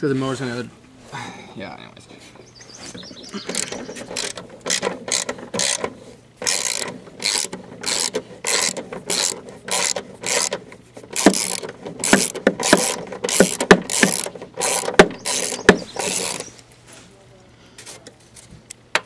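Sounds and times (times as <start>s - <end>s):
ratchet wrench clicking: 3.5s - 16.5s.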